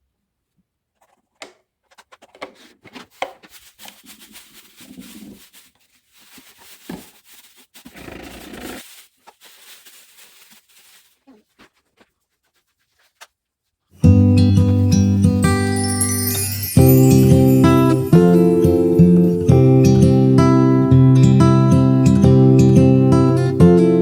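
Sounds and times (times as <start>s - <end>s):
rubbing or wiping: 1.8s - 13.9s.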